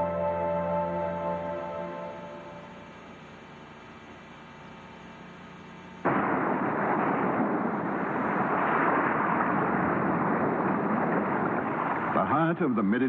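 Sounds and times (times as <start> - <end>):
faint sustained music tones: 0.0 - 9.4.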